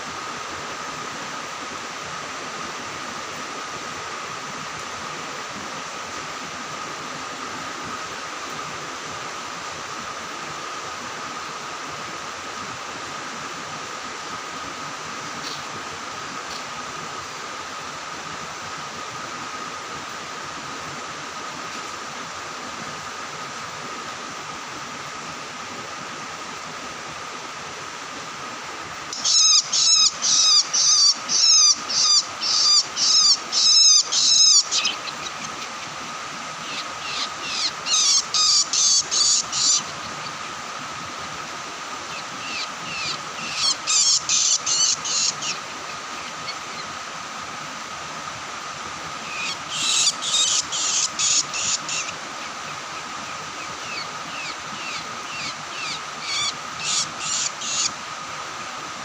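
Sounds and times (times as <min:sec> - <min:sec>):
thin background whine: 0:00.0 - 0:59.0
bird chipping song: 0:29.2 - 0:35.9, 0:36.7 - 0:40.0, 0:42.2 - 0:45.6, 0:49.4 - 0:52.1.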